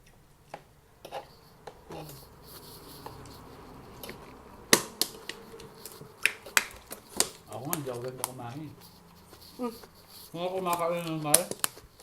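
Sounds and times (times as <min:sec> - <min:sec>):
soft chewing: 0:00.0 - 0:12.0
sharp clicks of crunching food: 0:04.0 - 0:12.0.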